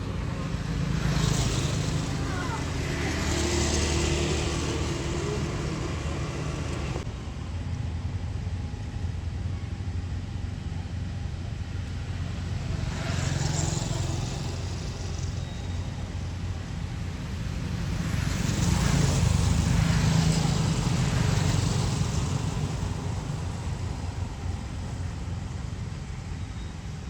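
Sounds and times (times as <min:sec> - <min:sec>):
vehicle passing: 0:00.0 - 0:07.1
traffic engine rumble: 0:00.0 - 0:27.0.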